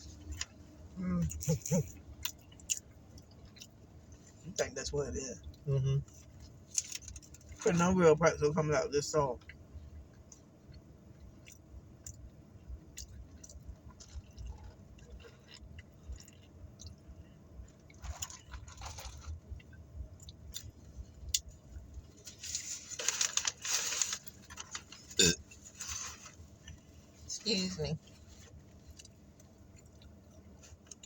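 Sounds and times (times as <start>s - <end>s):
chewing and mouth clicks: 1.4s - 4.4s, 9.4s - 21.5s, 28.6s - 31.0s
rustling: 17.9s - 19.4s, 22.1s - 27.2s.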